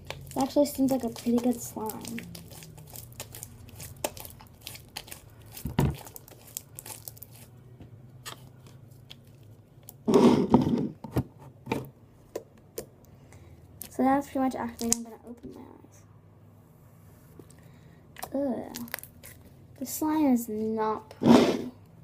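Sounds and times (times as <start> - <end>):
slime crackling and popping: 0.0 - 7.5, 14.8 - 15.1, 18.2 - 19.4
slime squelch: 0.0 - 10.6, 12.2 - 15.6, 17.3 - 21.8.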